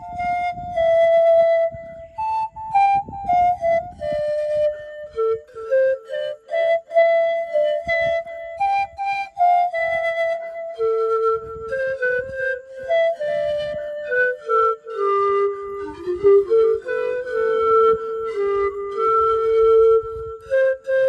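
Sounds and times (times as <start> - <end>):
panpipes playing slow melody: 0.0 - 0.8.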